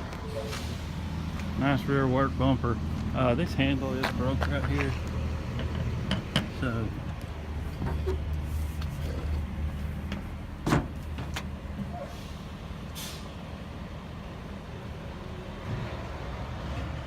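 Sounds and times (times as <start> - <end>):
diesel engine idling: 0.0 - 17.0.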